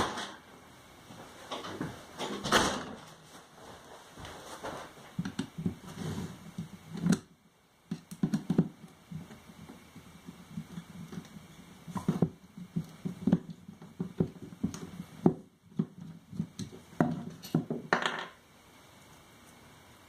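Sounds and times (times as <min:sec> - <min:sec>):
hard objects knocking and clattering: 0:07.9 - 0:18.4.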